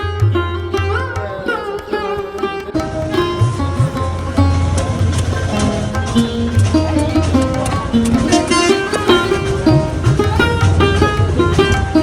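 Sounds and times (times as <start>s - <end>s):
plucked-string melody: 0.0s - 12.0s
low bass: 2.8s - 8.4s.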